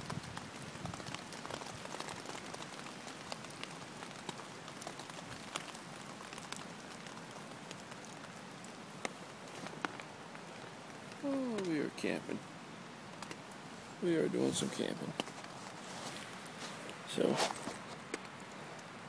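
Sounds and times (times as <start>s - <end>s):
sharp water drips: 0.0s - 13.8s
rain pattering: 0.0s - 19.0s.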